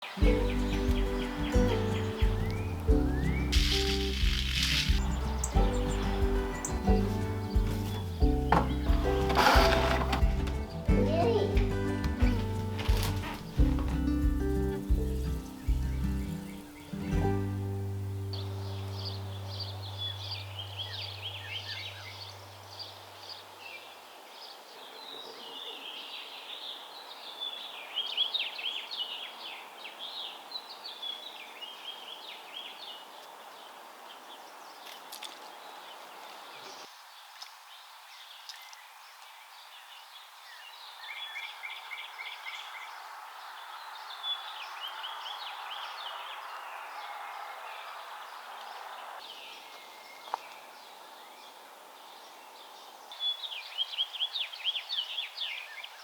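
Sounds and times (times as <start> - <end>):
background hiss: 0.0 - 56.0
songbirds chirping: 0.0 - 56.0
bird rapid trill: 0.4 - 10.0.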